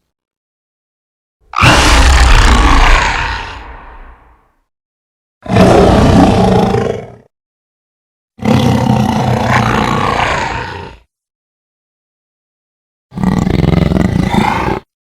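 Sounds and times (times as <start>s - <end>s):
robotic creature roars: 1.5s - 4.4s, 5.4s - 7.3s, 8.4s - 11.1s, 13.2s - 14.9s.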